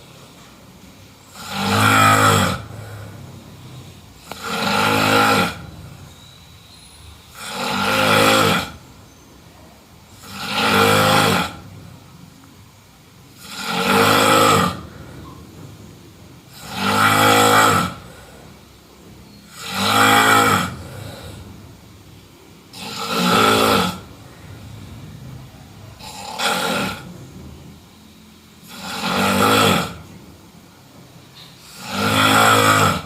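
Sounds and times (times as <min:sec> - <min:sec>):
person snoring: 0:01.3 - 0:05.7, 0:07.3 - 0:08.8, 0:10.2 - 0:11.6, 0:13.4 - 0:15.4, 0:22.7 - 0:24.0, 0:26.0 - 0:27.1, 0:28.6 - 0:30.1, 0:31.6 - 0:33.0.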